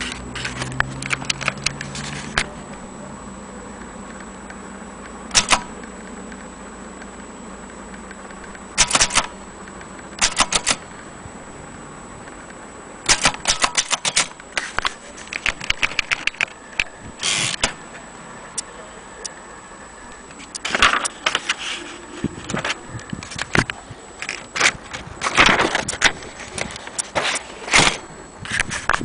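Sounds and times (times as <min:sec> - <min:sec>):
typewriter key strikes: 0:10.2 - 0:10.8.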